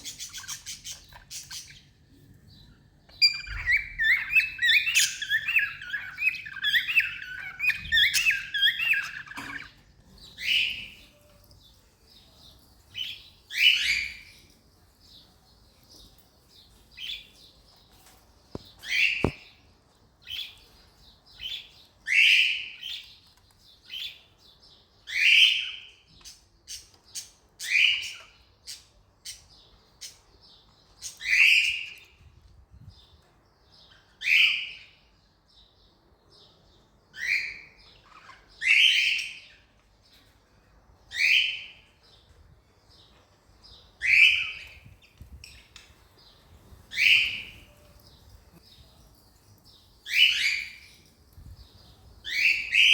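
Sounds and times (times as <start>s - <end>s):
cockatiels chirping: 0.0s - 1.8s, 3.2s - 11.1s, 46.9s - 47.9s.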